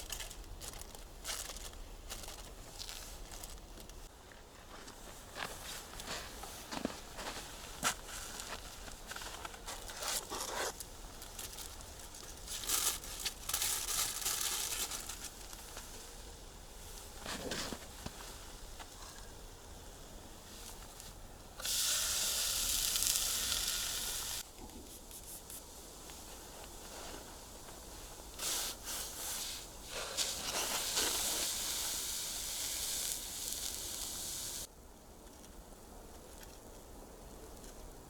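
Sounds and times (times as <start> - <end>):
fire crackles: 0.0 - 38.0
cooking sizzling hiss: 7.1 - 34.7.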